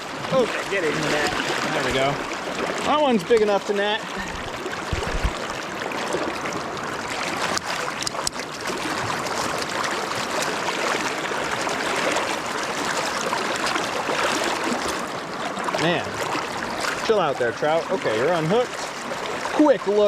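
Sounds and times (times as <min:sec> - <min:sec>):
river current rushing: 0:00.0 - 0:20.0
sharp clicks or splashes: 0:04.2 - 0:05.6, 0:07.4 - 0:10.6.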